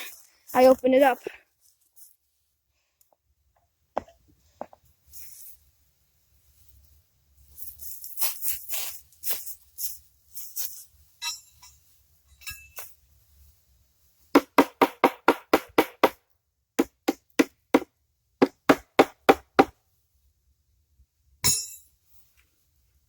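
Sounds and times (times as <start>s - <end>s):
scraping rustle: 6.4s - 12.1s
hammer knocking on metal: 18.4s - 19.7s.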